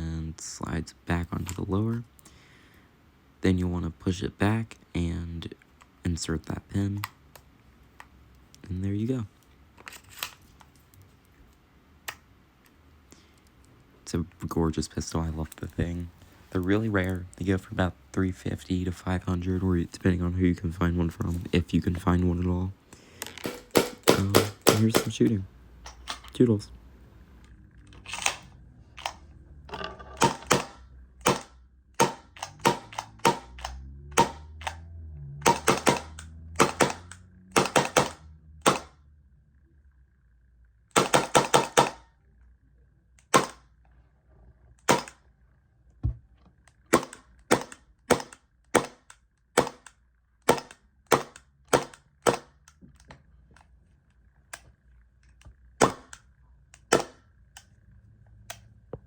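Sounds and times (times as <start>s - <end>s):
airsoft pistol shots: 23.4s - 25.1s, 30.2s - 33.6s, 34.2s - 34.5s, 35.4s - 38.9s, 41.0s - 42.0s, 43.3s - 43.6s, 44.9s - 45.2s, 46.9s - 49.8s, 50.4s - 52.5s
pistol slide cycling: 30.2s - 34.9s.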